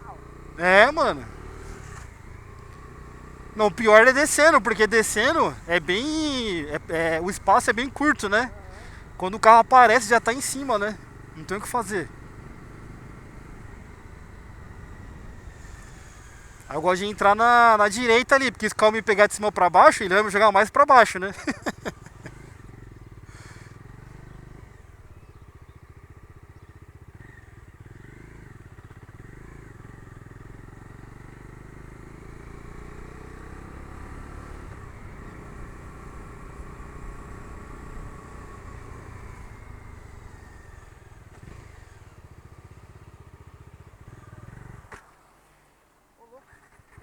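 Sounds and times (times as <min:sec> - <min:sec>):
motorcycle engine running: 0:00.0 - 0:47.0.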